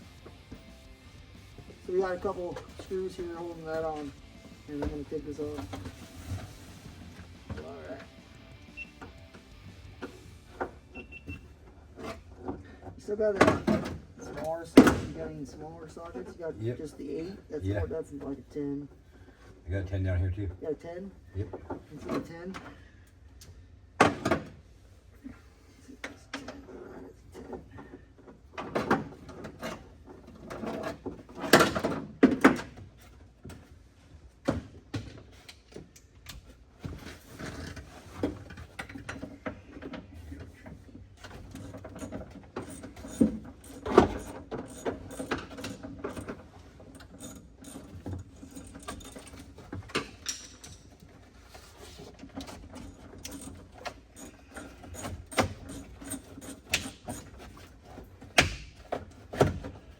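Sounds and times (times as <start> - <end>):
metal tools clanking: 40.5 - 51.3.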